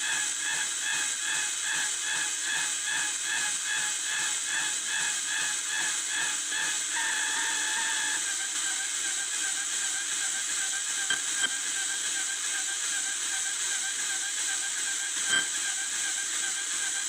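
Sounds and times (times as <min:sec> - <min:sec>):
pulsing electronic tone: 0:06.6 - 0:17.0.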